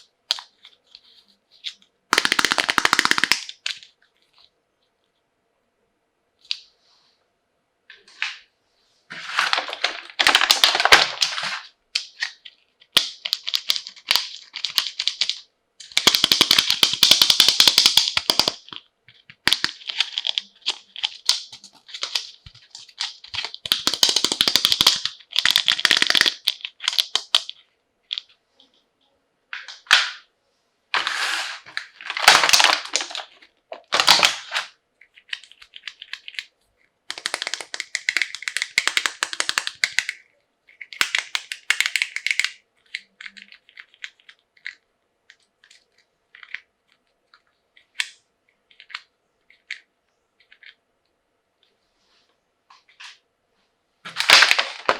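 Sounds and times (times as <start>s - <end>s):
plastic packaging crinkling: 9.1s - 12.6s, 31.0s - 36.4s, 54.1s - 54.9s
plastic toy parts rattling: 9.1s - 28.4s, 31.0s - 36.5s, 37.1s - 50.8s, 54.1s - 54.9s.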